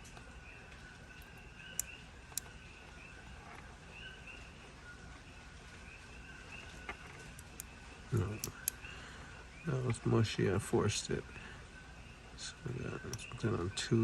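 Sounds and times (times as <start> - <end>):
frogs chirping: 0.5 - 3.4
sharp clicks: 1.2 - 2.6, 7.3 - 8.9.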